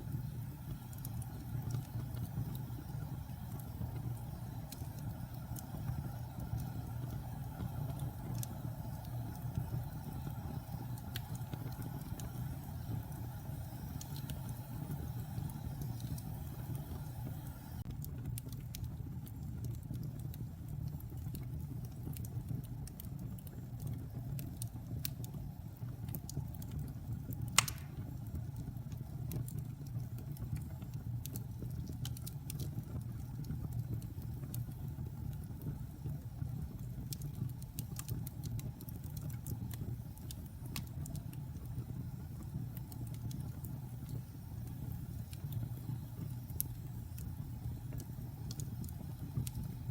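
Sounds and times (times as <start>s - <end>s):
loud pop from fire: 27.6s - 28.1s.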